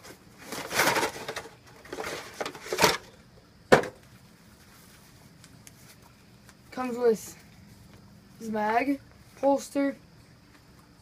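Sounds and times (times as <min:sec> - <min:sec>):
rustling and crinkling packaging: 0:00.0 - 0:03.1.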